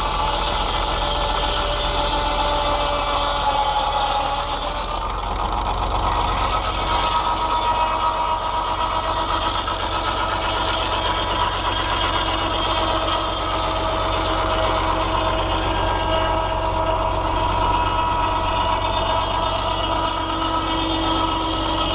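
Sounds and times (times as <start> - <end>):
circular saw whine: 0.0 - 21.9
tractor engine running: 0.0 - 21.9.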